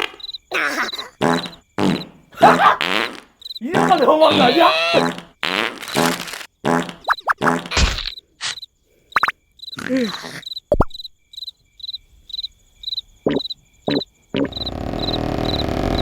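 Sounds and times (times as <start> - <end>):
cricket chirps: 0.0 - 16.0
comic vocal noises and snorts: 0.5 - 5.3, 9.8 - 10.4
loud rasping snore: 14.6 - 16.0.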